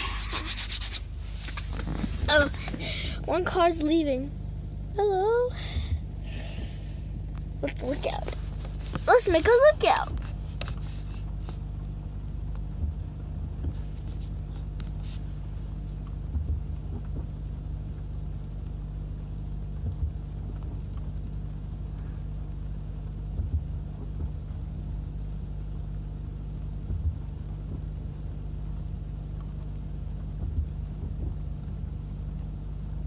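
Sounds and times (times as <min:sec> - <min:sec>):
vehicle engine idling: 0:00.0 - 0:33.0
soft low thump: 0:23.3 - 0:24.6, 0:26.8 - 0:27.9, 0:30.4 - 0:31.7.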